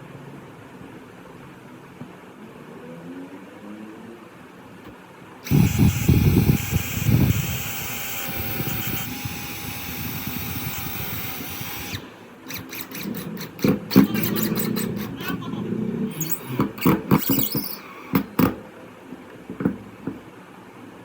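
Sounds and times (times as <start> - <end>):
electric drill whining: 5.4 - 15.1, 16.1 - 18.6.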